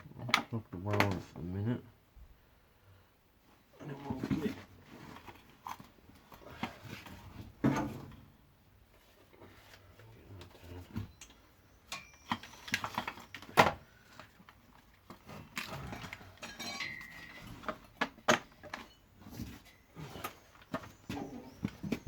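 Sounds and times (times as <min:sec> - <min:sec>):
metallic clinks of tools: 0:11.1 - 0:13.4, 0:15.8 - 0:17.5.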